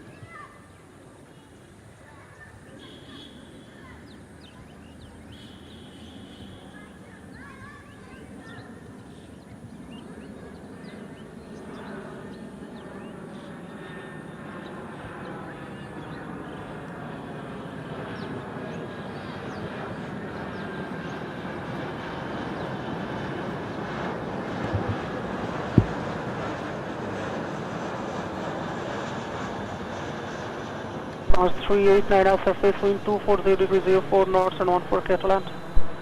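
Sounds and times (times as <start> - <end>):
jet airliner engine noise: 0.0 - 36.0
faint steady whine: 31.1 - 36.0.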